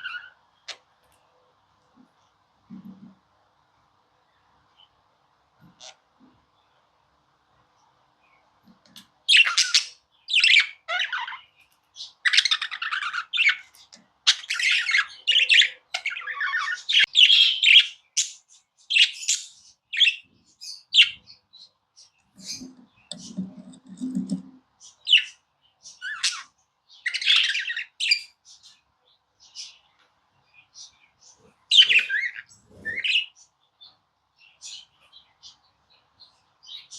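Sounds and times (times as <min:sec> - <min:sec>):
budgerigar chirping and warbling: 0:00.0 - 0:00.9, 0:09.3 - 0:21.4, 0:25.0 - 0:28.4, 0:31.7 - 0:33.4.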